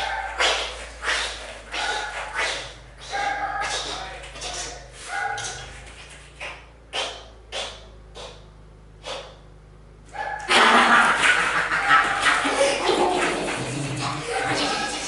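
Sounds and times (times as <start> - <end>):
pet huffing: 0.0 - 5.9, 10.3 - 14.9.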